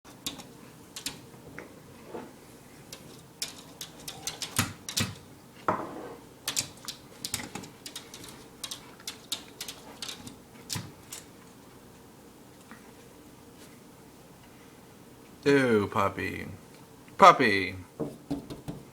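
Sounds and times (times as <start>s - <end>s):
puppy claws tapping on floor: 0.2s - 1.2s, 2.9s - 5.2s, 6.5s - 11.3s.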